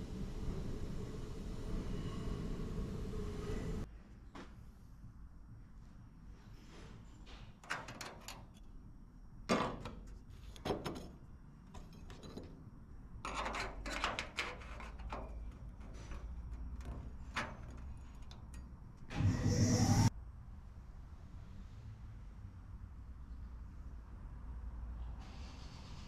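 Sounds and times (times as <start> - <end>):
objects being handled clattering: 9.5 - 18.8.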